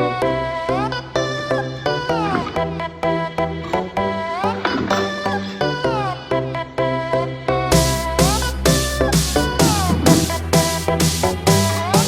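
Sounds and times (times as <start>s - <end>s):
electronic dance music: 7.7s - 12.0s.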